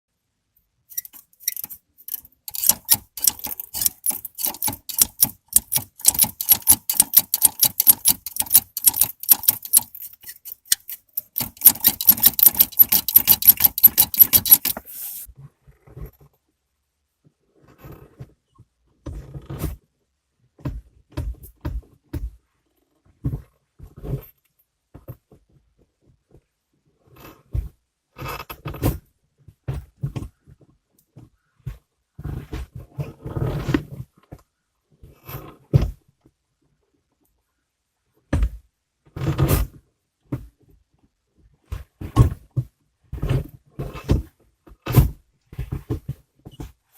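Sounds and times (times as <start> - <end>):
gear shift lever rattling: 0.9 - 14.8.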